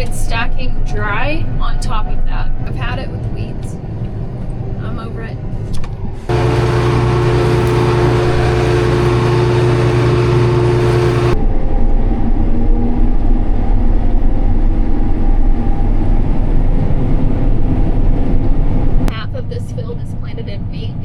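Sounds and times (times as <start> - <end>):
combine harvester running: 6.1 - 12.3.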